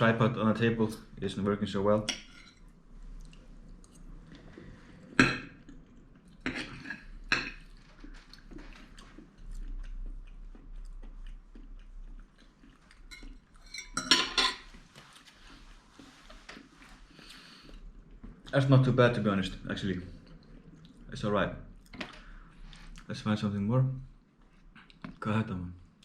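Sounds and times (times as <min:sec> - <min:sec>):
quiet chewing: 0:02.6 - 0:13.9, 0:14.7 - 0:18.5, 0:20.0 - 0:21.1, 0:21.8 - 0:23.1, 0:24.0 - 0:25.2
cutlery clinking on a plate: 0:13.1 - 0:14.7.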